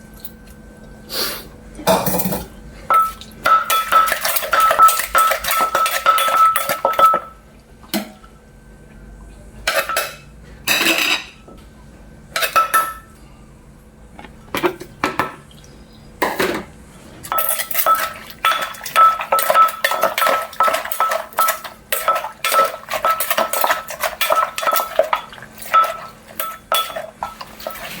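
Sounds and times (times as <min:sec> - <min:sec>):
pestle clinking in a mortar: 0:02.9 - 0:07.4, 0:17.3 - 0:28.0.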